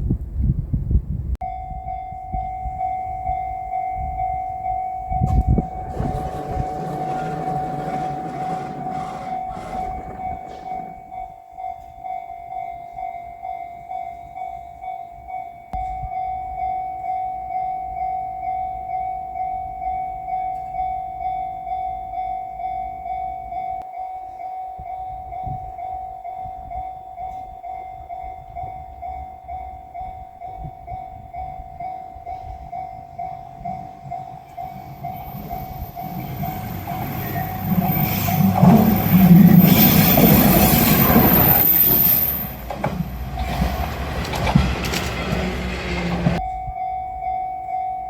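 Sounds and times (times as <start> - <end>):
level-crossing bell ringing: 1.4 - 44.1
diesel railcar passing: 1.9 - 12.6, 31.1 - 46.8.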